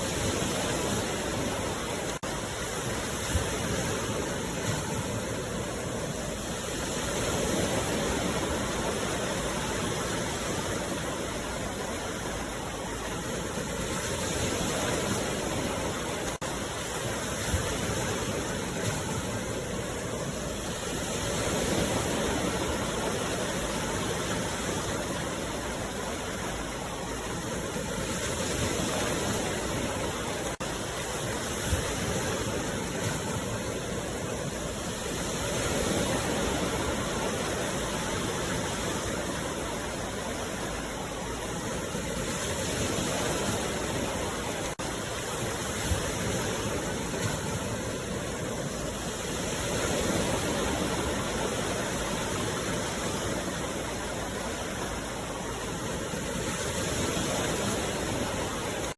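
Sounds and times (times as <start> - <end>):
sea waves washing in: 0.0 - 58.9.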